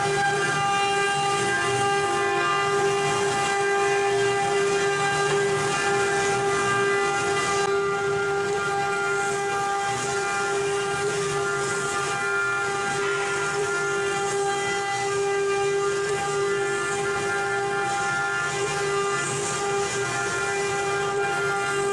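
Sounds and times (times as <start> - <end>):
router spindle whining: 0.0 - 21.9.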